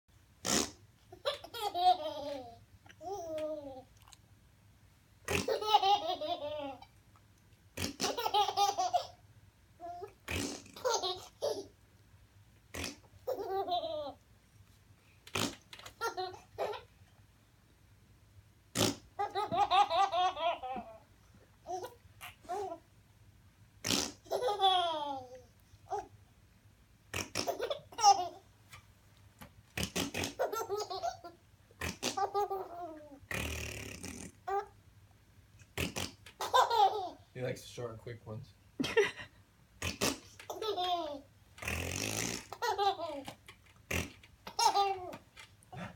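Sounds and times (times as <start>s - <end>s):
man blowing raspberries: 0.4s - 0.8s, 10.3s - 10.8s, 18.7s - 19.2s, 29.8s - 30.4s, 33.3s - 34.5s, 41.6s - 42.7s
lip raspberry noises: 0.4s - 1.4s, 5.3s - 6.0s, 7.7s - 9.1s, 9.8s - 11.6s, 12.7s - 13.8s, 15.2s - 16.8s, 18.7s - 19.8s, 23.8s - 24.6s, 27.1s - 28.4s, 29.7s - 31.0s, 31.7s - 34.7s, 35.6s - 36.7s, 39.8s - 45.9s
baby giggling: 1.1s - 3.9s, 5.3s - 6.9s, 7.9s - 9.2s, 12.9s - 14.2s, 15.9s - 16.9s, 19.2s - 21.0s, 24.0s - 26.1s, 27.2s - 28.4s, 30.0s - 33.2s, 36.4s - 37.2s, 40.0s - 41.3s, 42.4s - 43.4s, 44.4s - 45.9s.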